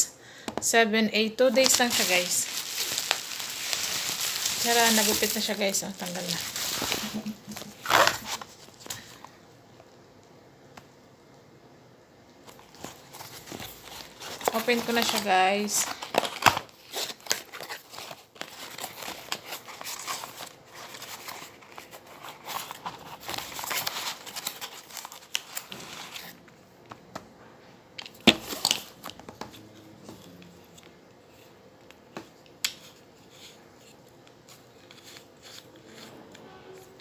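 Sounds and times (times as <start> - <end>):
plastic packaging crinkling: 1.4 - 9.2, 12.5 - 26.3.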